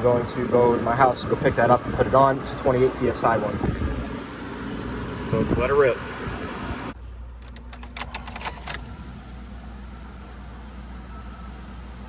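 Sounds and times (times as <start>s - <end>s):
car engine idling: 7.0s - 12.0s
keys jangling: 7.4s - 9.2s.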